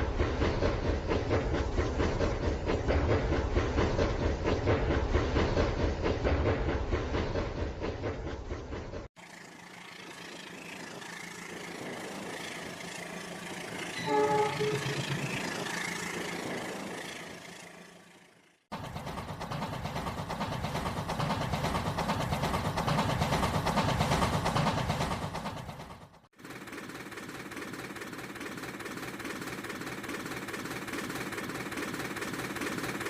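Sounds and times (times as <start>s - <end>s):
train running: 0.0s - 33.0s
rhythmic rolling noise: 11.0s - 17.2s
train horn blast: 13.9s - 15.5s.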